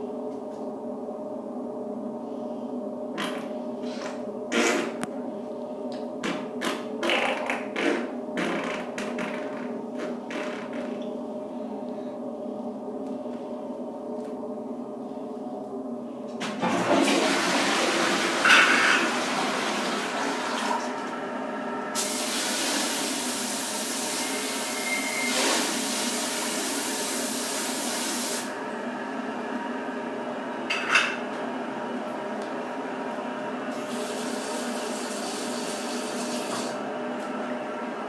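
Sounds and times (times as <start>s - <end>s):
steady hum: 0.0s - 38.0s
toilet flushing: 16.4s - 28.6s, 33.7s - 36.8s.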